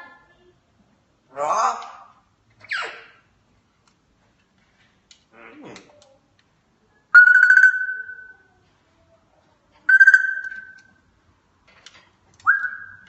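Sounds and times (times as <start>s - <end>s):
parrot trilled ringing tones: 7.2s - 8.5s, 9.9s - 11.0s.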